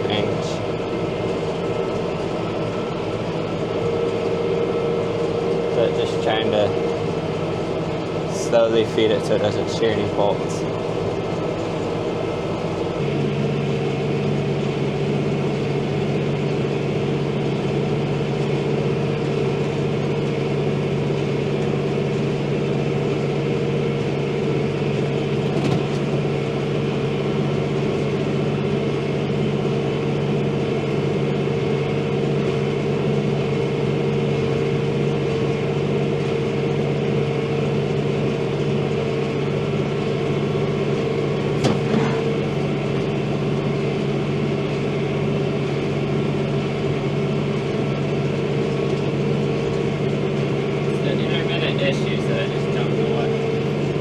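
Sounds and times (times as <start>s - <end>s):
diesel tractor engine under load: 0.0s - 54.0s.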